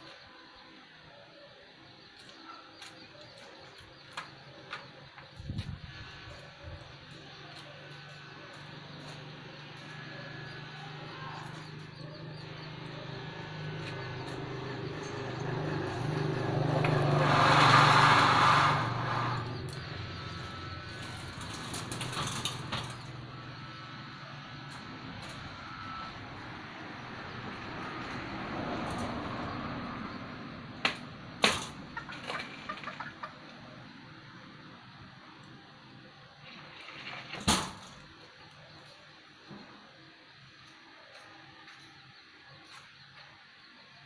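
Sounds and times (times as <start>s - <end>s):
machine motor hum: 1.7s - 17.8s, 19.0s - 30.8s.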